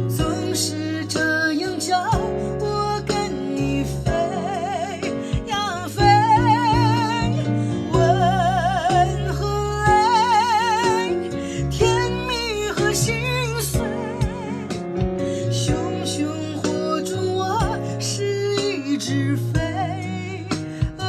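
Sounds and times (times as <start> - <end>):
person singing with vibrato: 0.0 - 21.0
plucked-string backing track: 0.0 - 21.0.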